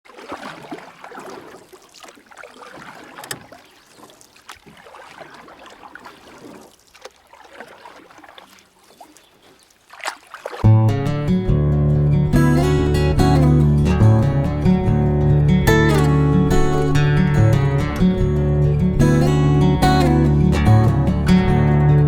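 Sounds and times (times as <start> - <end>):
paddle strokes swishing water: 0.1 - 10.6, 17.6 - 19.1.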